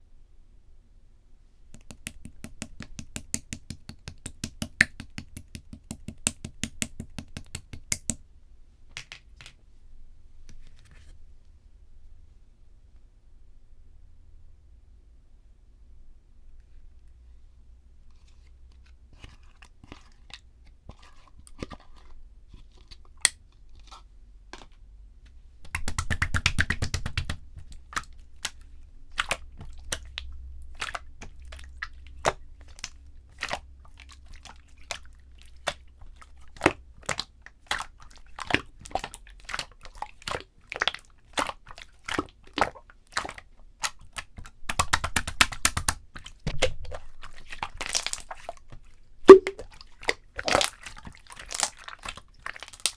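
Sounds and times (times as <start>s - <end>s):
fast crackling of slime: 1.8s - 8.2s, 25.7s - 52.9s
slime squeezed by hand: 49.3s - 49.7s.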